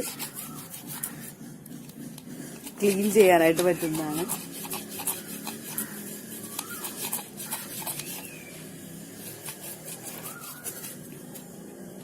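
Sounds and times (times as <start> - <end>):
toothbrush scrubbing: 0.0 - 11.2
bird chirps: 7.8 - 8.7.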